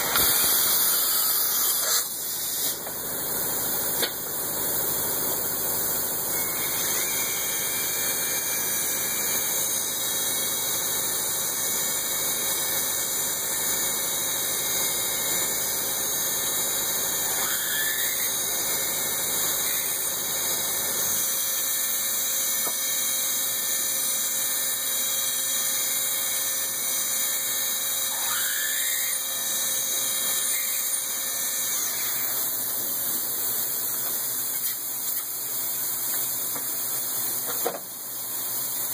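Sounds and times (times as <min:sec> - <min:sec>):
machine tool cutting metal: 0:00.0 - 0:02.9, 0:14.5 - 0:38.9.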